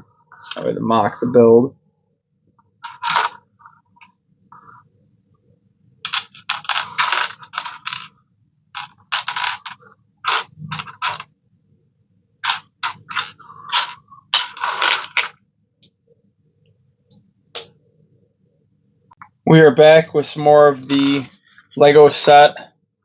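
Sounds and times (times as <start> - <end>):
faint low hum: 0.0 - 23.0
plastic pieces clicking and rattling: 6.1 - 8.1.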